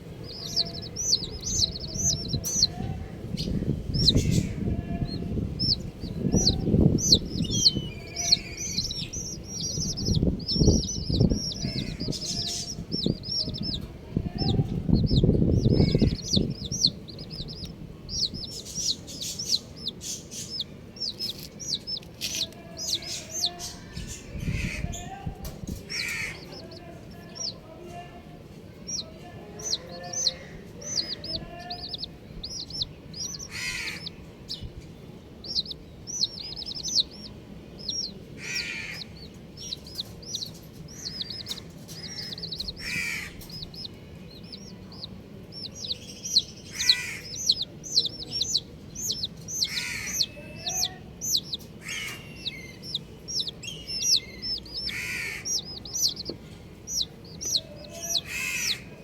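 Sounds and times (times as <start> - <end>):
baby chicks peeping: 0.0 - 59.0
harsh chick call: 28.9 - 34.6, 41.0 - 56.3, 56.9 - 59.0.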